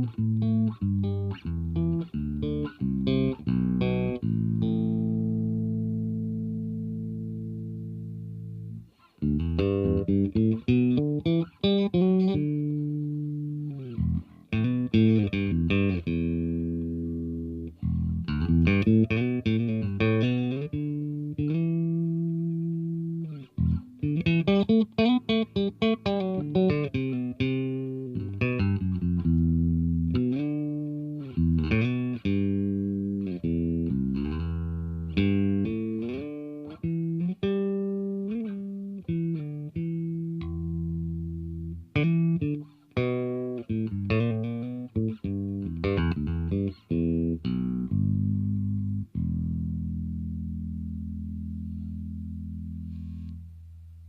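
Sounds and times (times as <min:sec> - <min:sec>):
electric bass plucked notes: 0:00.0 - 0:54.0.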